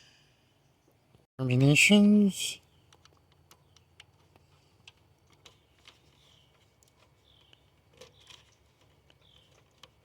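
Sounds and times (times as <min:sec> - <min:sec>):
faint bird chirps: 0:05.5 - 0:09.8.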